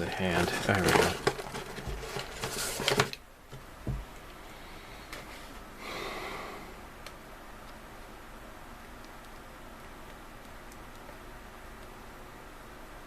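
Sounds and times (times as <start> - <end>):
vinyl figure parts rustling: 0.0 - 4.0
soft breath-like hiss: 4.4 - 6.9.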